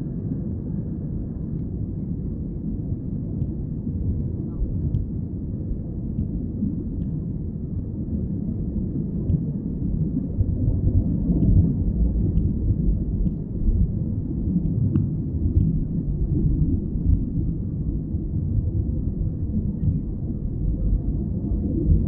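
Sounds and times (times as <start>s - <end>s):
airliner cabin rumble: 8.8s - 22.0s.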